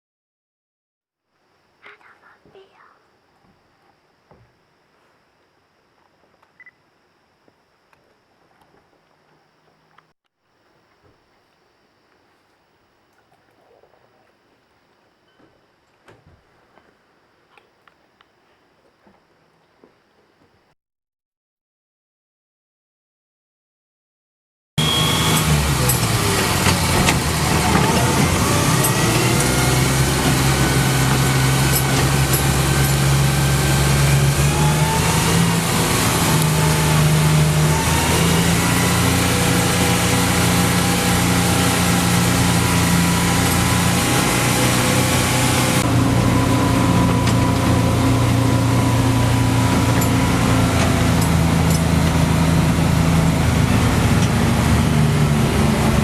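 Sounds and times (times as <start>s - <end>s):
road noise: 24.8s - 56.0s
truck engine running: 24.8s - 56.0s.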